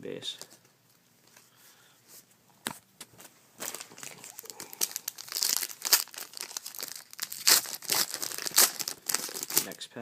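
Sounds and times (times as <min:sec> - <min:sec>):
foil wrapper crinkling and tearing: 0:03.6 - 0:09.8.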